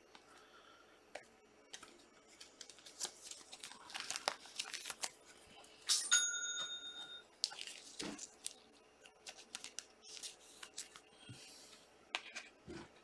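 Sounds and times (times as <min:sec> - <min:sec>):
trading cards rustling and clicking: 0:01.7 - 0:05.2, 0:05.9 - 0:11.1
bell-like chime tone: 0:06.1 - 0:07.2.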